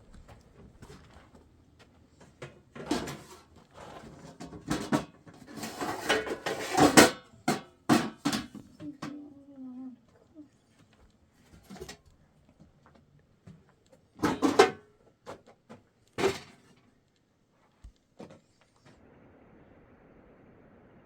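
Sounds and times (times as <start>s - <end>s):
scraping or rustling: 2.3s - 7.1s.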